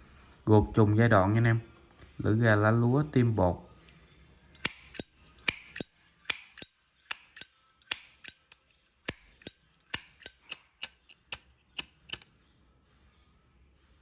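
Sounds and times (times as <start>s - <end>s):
metallic ringing clink: 4.6s - 11.4s
lighter lid clicking open and shut: 4.6s - 12.3s.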